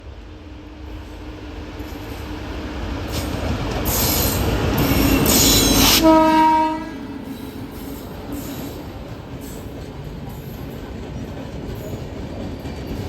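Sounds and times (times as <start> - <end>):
train wheels rumbling on track: 0.0 - 13.0
train horn blast: 4.9 - 7.2.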